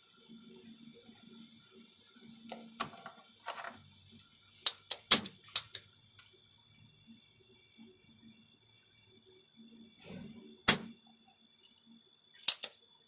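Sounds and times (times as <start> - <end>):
hand tools clicking and tapping: 4.6 - 5.8, 12.4 - 12.8.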